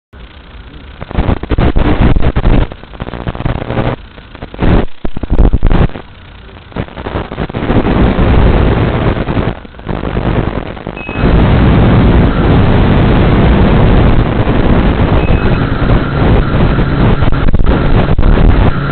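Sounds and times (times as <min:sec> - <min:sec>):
drone motor noise: 0:00.2 - 0:18.9.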